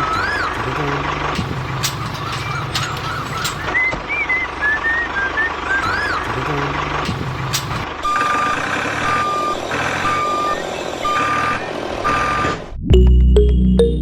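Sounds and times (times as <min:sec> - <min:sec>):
steady machine noise: 0:01.4 - 0:03.8, 0:07.0 - 0:08.0
reversing alarm beeping: 0:07.1 - 0:12.6
music: 0:12.8 - 0:14.0.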